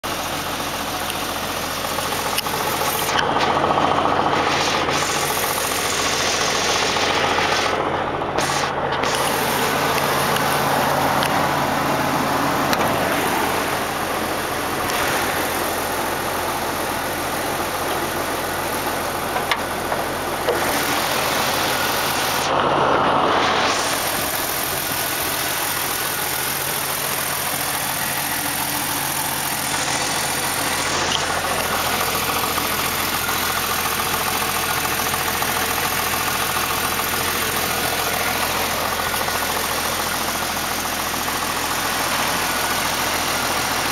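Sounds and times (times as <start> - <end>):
car engine idling: 0.0 - 43.9
engine knocking: 0.0 - 43.9.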